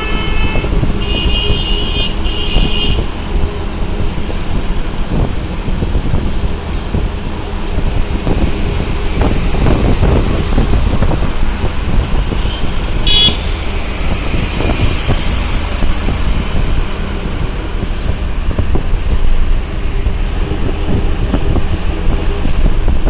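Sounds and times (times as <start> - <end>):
high-pitched vehicle horn honk: 0.0 - 3.0, 12.5 - 13.6
road traffic: 0.0 - 23.0
wind rumble on microphone: 0.0 - 23.0.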